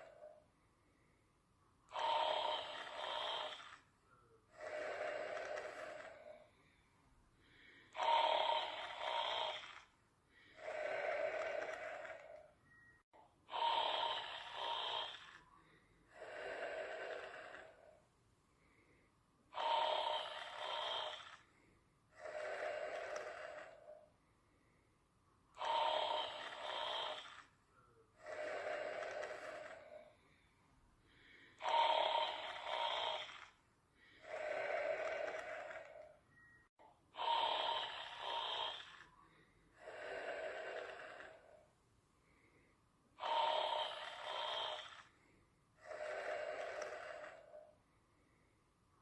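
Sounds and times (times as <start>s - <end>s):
person snoring: 0.0s - 0.3s, 1.9s - 3.9s, 4.5s - 6.8s, 7.4s - 12.5s, 13.4s - 18.0s, 19.5s - 24.0s, 25.6s - 27.5s, 28.2s - 30.4s, 31.1s - 36.2s, 37.1s - 47.8s.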